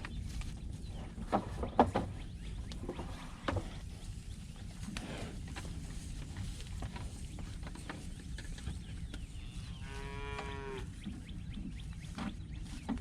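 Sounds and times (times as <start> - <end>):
cow mooing: 9.5 - 10.9.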